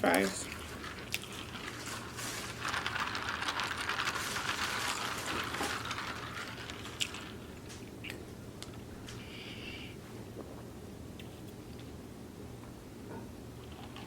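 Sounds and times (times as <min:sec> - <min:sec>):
eating crackling and clicking: 0:00.0 - 0:09.2.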